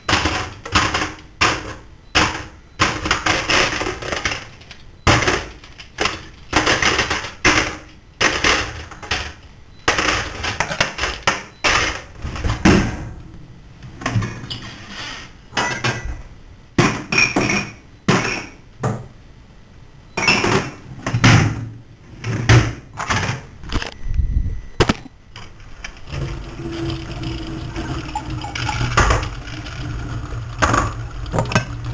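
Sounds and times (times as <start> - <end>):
dishes and pots clattering: 15.5 - 16.2, 16.8 - 18.6, 20.2 - 21.4.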